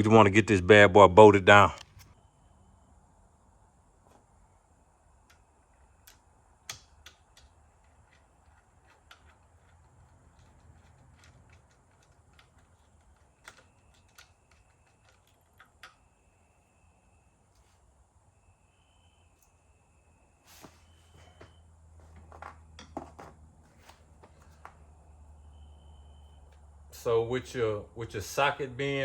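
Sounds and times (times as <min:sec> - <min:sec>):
metal hardware clicking: 0:06.0 - 0:16.0.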